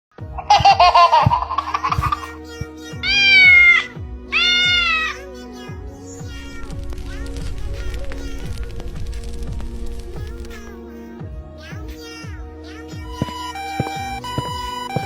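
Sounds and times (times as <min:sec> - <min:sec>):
background music with steady beat: 0:00.1 - 0:15.0
cat meowing: 0:03.0 - 0:05.2.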